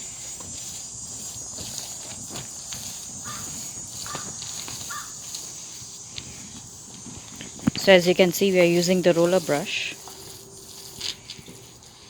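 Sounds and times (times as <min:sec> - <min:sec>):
high insect drone: 0:00.0 - 0:12.0
crows cawing: 0:03.2 - 0:05.2.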